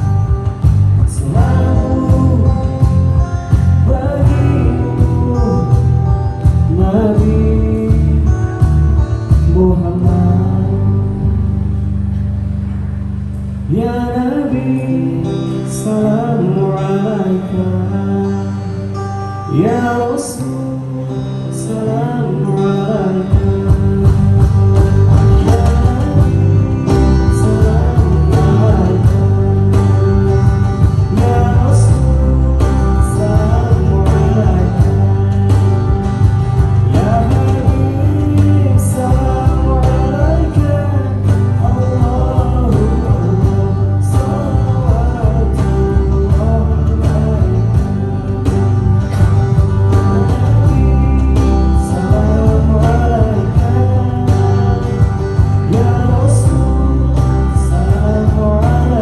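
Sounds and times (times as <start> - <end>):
live band music with bass: 0.0 - 59.0.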